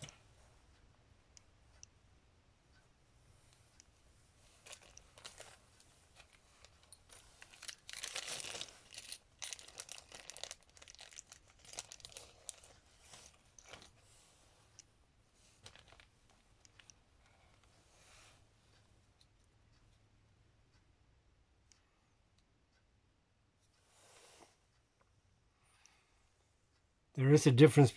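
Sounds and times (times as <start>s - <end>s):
plastic packaging crinkling: 4.6s - 5.6s, 6.7s - 12.8s, 15.6s - 16.1s.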